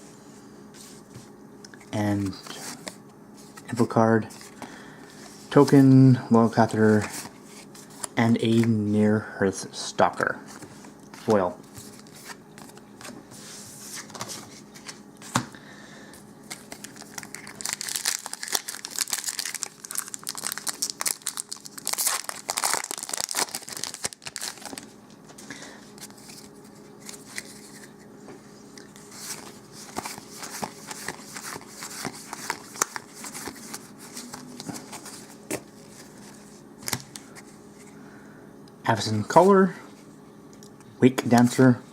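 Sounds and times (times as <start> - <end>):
foil wrapper crinkling and tearing: 16.5 - 24.9, 29.2 - 35.3.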